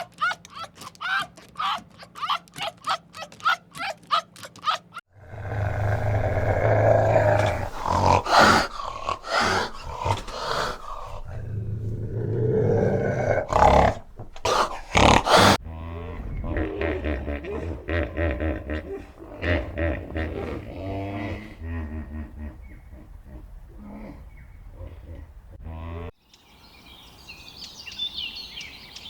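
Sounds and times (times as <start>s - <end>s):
animal growling and roaring: 5.1s - 26.1s.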